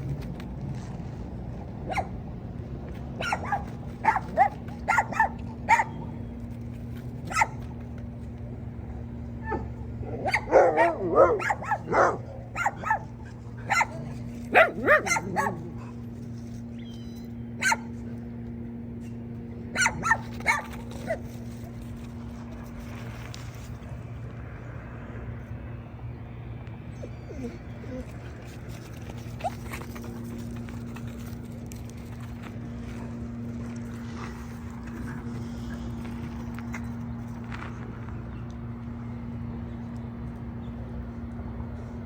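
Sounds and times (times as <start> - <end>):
low hum: 0.0 - 42.0
dog barking: 1.9 - 2.1, 3.2 - 6.0, 7.3 - 7.6, 9.5 - 15.7, 17.6 - 17.9, 19.7 - 20.7
dog yelping: 3.2 - 6.0, 7.3 - 7.6, 9.4 - 15.9, 17.6 - 17.9, 19.7 - 21.2, 27.0 - 28.2.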